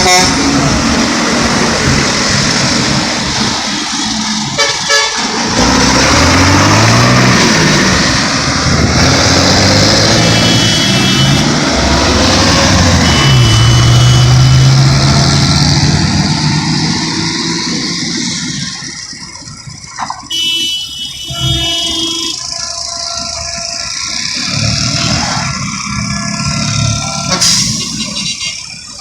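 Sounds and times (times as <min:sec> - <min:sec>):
vehicle horns tooting: 0:00.0 - 0:00.5, 0:04.6 - 0:05.3, 0:10.1 - 0:11.6, 0:12.7 - 0:15.0, 0:20.3 - 0:28.7
truck and car engines: 0:00.0 - 0:29.0.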